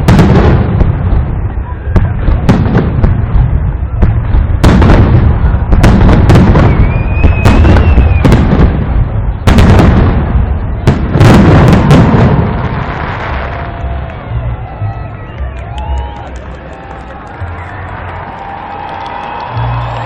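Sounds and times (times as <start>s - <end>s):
fireworks bangs: 0.0s - 14.6s
firework whistle: 4.7s - 8.8s, 17.7s - 20.0s.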